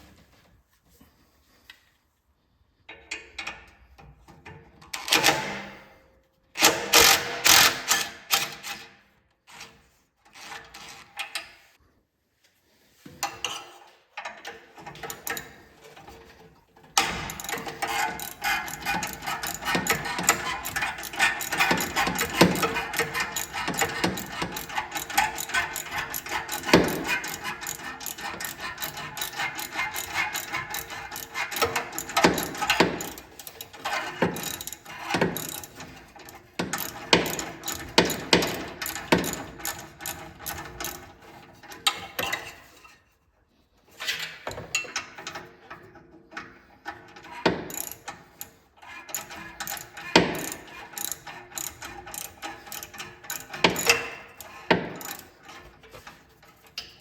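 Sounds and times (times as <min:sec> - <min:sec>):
ratchet wrench clicking: 0:17.0 - 0:41.1, 0:47.5 - 0:57.0.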